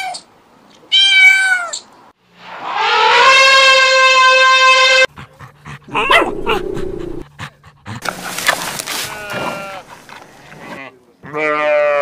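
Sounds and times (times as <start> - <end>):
cat meowing: 0.9 - 1.8
dog panting: 5.1 - 10.8
dog rough vocal sounds: 5.1 - 10.8
bleat: 9.0 - 12.0.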